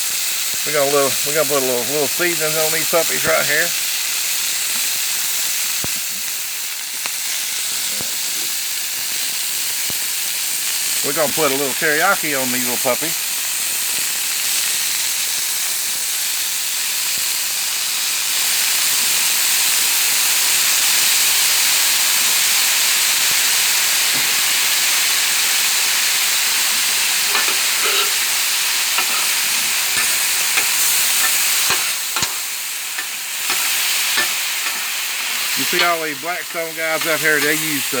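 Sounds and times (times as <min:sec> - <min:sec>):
food sizzling on a griddle: 0:00.0 - 0:38.0
steam hissing: 0:00.0 - 0:38.0
metal spatula scraping and tapping: 0:27.3 - 0:28.3, 0:29.0 - 0:36.1.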